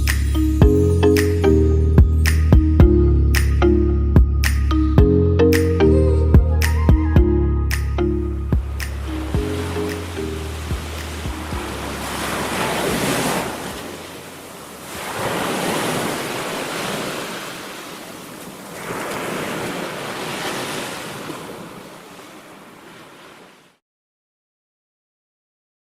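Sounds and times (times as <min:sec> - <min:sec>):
sea waves surging and washing: 0:07.7 - 0:23.8.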